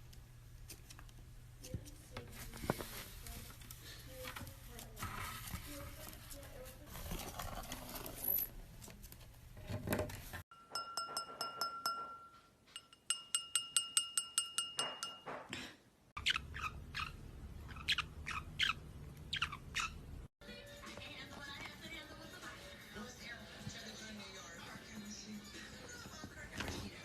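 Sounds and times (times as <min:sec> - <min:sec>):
parrot chirping and whistling: 0:16.2 - 0:20.0.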